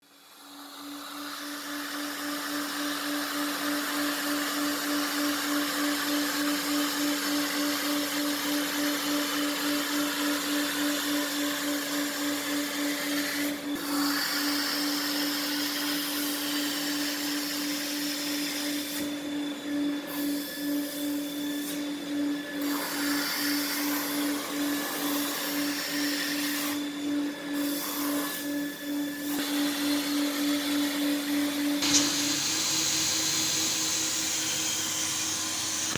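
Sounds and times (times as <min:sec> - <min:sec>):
vacuum motor humming: 0:29.4 - 0:35.9.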